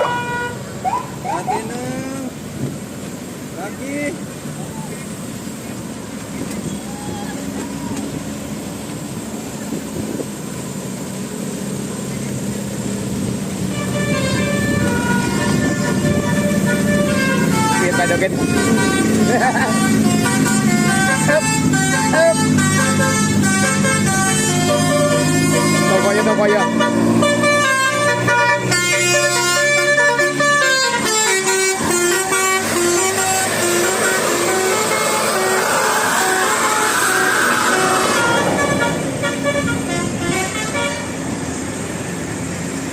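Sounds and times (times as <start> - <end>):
musical bus horn melody: 0.0 - 0.8, 13.6 - 41.3
bus engine droning: 0.0 - 42.9.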